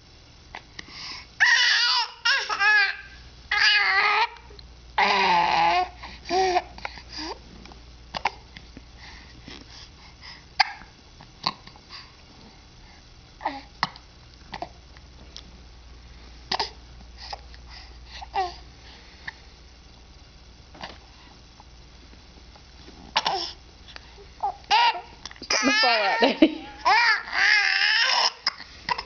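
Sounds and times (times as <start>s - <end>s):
baby babbling: 26.8s - 29.0s.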